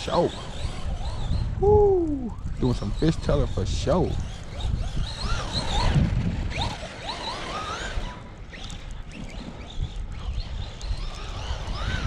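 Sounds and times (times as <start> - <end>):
rc truck electric motor whining: 0.0 - 12.0
wind on microphone: 0.0 - 12.0.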